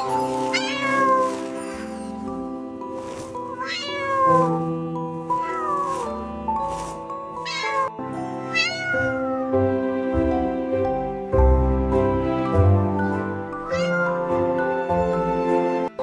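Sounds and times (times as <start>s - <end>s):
background music: 0.0s - 16.0s
cat meowing: 0.5s - 1.9s, 3.5s - 4.6s, 5.3s - 6.2s, 7.4s - 9.5s, 13.6s - 14.3s.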